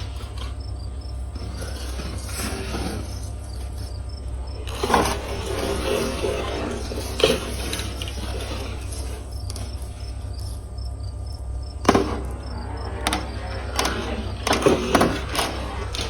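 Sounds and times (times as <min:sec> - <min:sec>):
marbles rolling on track: 0:11.7 - 0:16.0.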